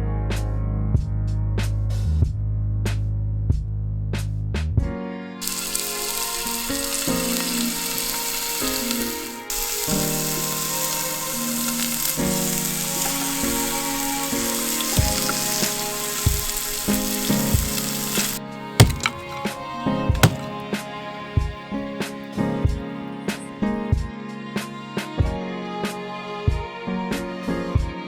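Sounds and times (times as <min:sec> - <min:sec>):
steady sizzling hiss: 0:05.4 - 0:23.8.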